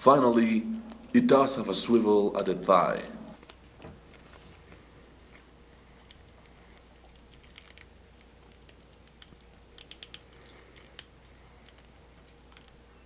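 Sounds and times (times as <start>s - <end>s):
plastic action figure clicking: 8.5s - 11.9s.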